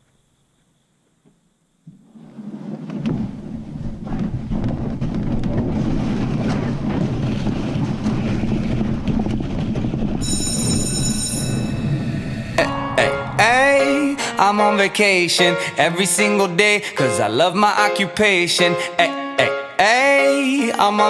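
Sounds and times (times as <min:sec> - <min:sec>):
steady high tones: 0:10.2 - 0:16.0
steady low rumbling: 0:11.4 - 0:16.0.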